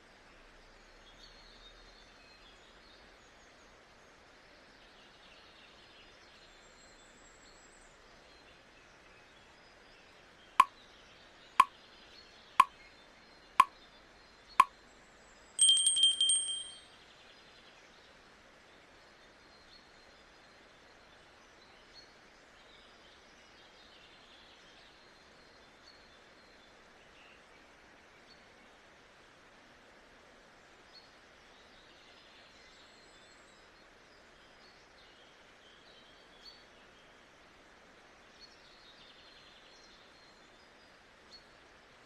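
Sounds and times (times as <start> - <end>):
birds chirping: 15.6 - 16.8
timer ticking: 15.6 - 16.8.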